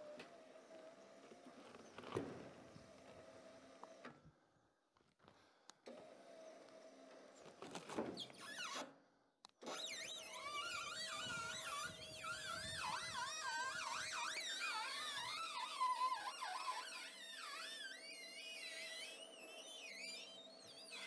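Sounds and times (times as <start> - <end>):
electric winch whining: 9.6 - 21.0
wavering squeal: 9.8 - 21.0.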